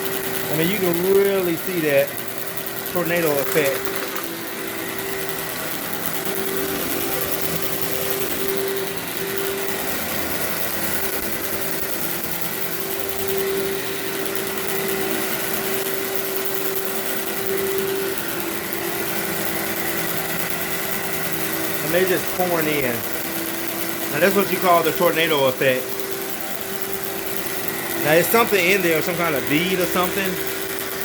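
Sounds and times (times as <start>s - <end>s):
vacuum cleaner on carpet: 0.0s - 31.0s.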